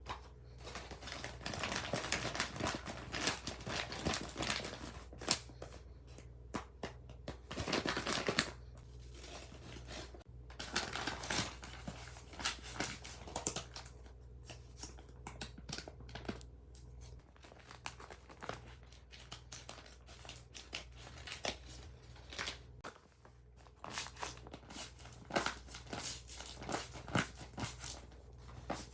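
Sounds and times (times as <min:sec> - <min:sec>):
paper rustling with sharp crackles: 0:00.1 - 0:05.8, 0:17.0 - 0:28.9
paper and tape crinkling and tearing: 0:00.6 - 0:05.6, 0:07.3 - 0:28.9.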